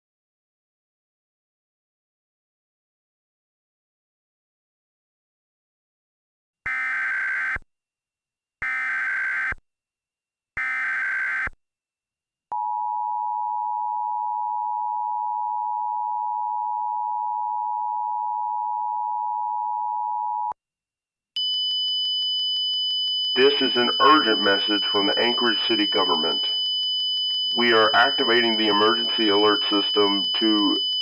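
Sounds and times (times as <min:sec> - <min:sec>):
screeching digital data tones: 0:23.4 - 0:31.0
two-tone attention signal: 0:27.3 - 0:31.0.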